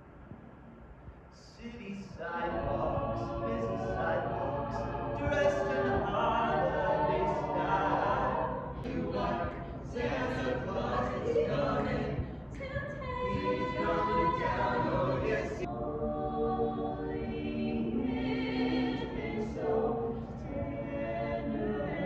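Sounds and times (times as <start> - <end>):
group singing a cappella: 1.7 - 22.0.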